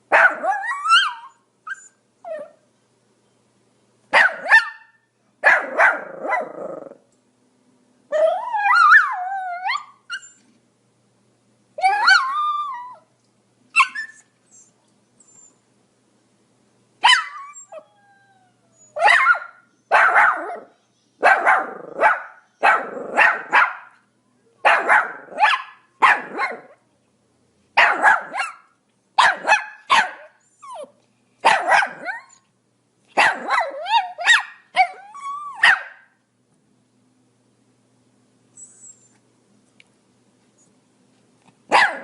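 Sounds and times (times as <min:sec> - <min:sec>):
small dog barking: 0:00.1 - 0:01.2, 0:04.1 - 0:06.6, 0:17.0 - 0:17.5, 0:19.0 - 0:24.0, 0:24.6 - 0:26.8, 0:27.8 - 0:32.3, 0:33.1 - 0:36.2, 0:41.7 - 0:42.0.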